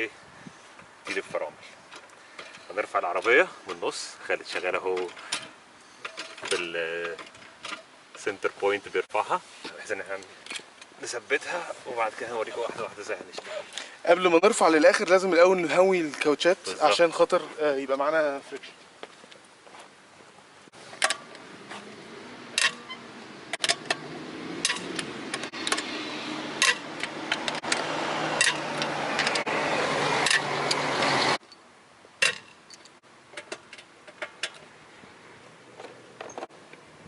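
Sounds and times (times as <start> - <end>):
wrench clicking on wheel bolts: 22.6 - 25.9, 26.6 - 29.5.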